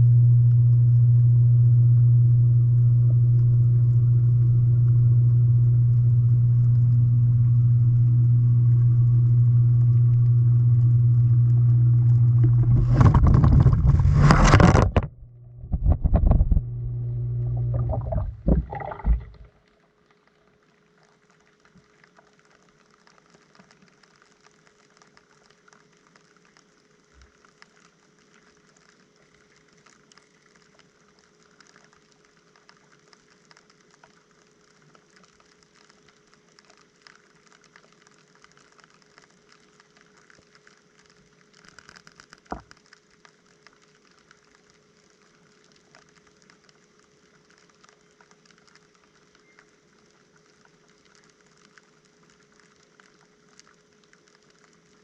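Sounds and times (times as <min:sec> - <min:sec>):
washing machine hum: 0:00.0 - 0:19.5
light pattering and ticks: 0:19.7 - 0:55.0.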